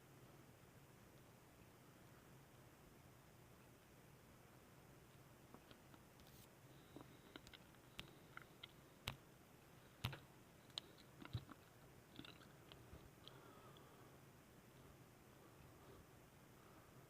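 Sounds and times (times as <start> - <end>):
mouse and keyboard clicks: 7.0 - 9.2, 10.0 - 13.4.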